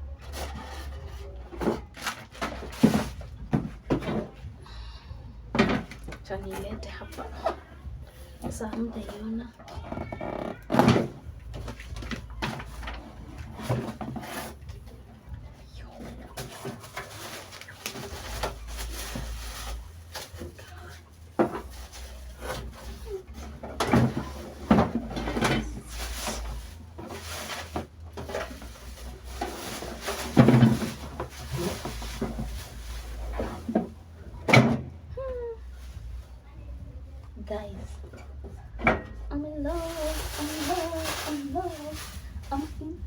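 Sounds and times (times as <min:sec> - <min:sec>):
knocks and clatters of handled item: 0:00.2 - 0:04.5, 0:21.3 - 0:35.0
packaging rustling: 0:16.3 - 0:34.0.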